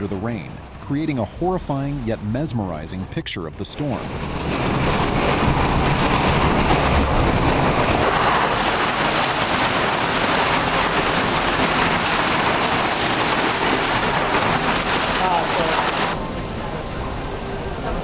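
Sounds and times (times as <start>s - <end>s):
hail and heavy rain pelting: 4.0s - 17.5s.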